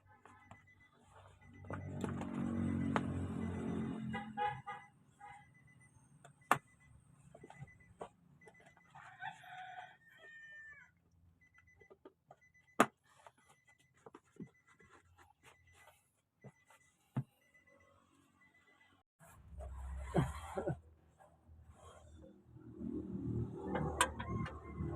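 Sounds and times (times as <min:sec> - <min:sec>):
rooster crowing: 0:09.0 - 0:10.9, 0:23.6 - 0:24.9.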